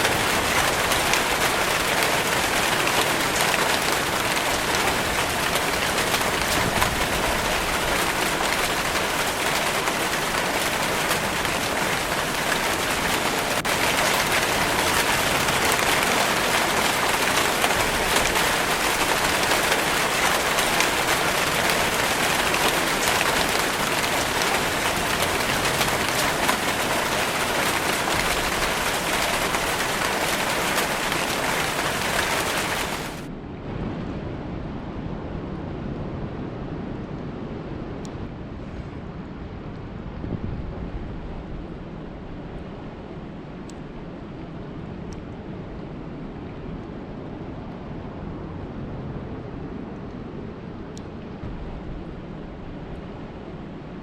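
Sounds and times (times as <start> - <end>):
heavy rain: 0.0 - 33.3.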